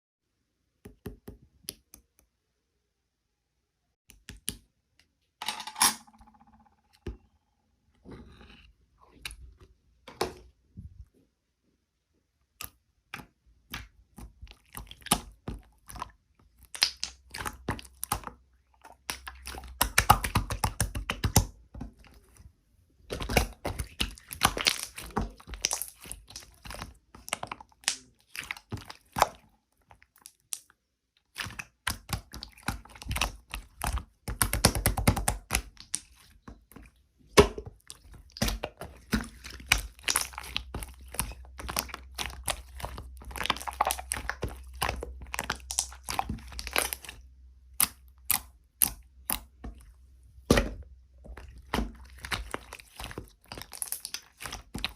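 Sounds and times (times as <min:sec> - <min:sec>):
crackling and crunching handling: 0:21.5 - 0:54.9.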